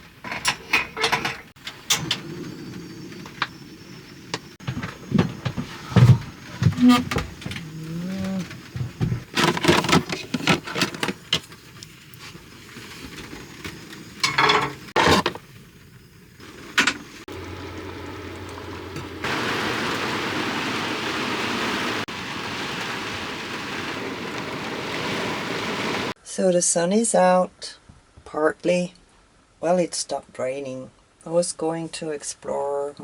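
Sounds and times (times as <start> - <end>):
irregular knocks and clatters: 0.0 - 11.8.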